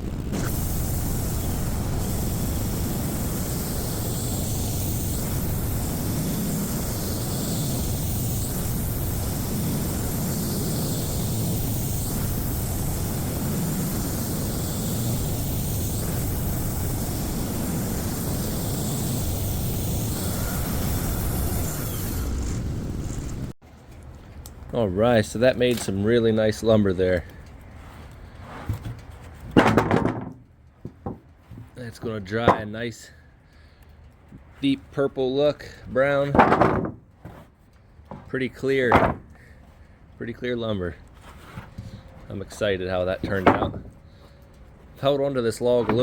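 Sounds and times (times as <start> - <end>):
sawmill blade cutting log: 45.6 - 46.0.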